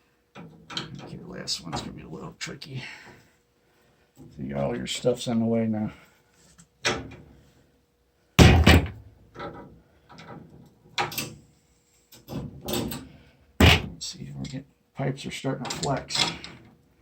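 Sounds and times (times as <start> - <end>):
wrenches knocking on pipes: 13.6 - 13.9.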